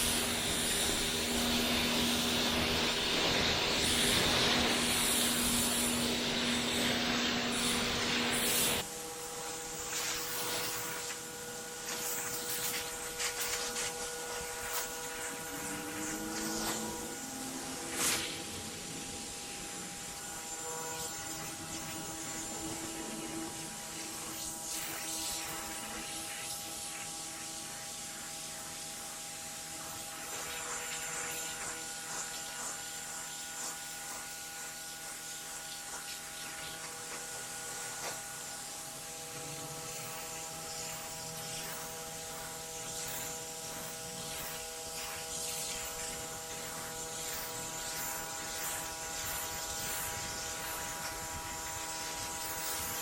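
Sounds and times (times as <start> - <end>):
pressure washer jet hissing: 0.0 - 25.8, 37.4 - 53.0.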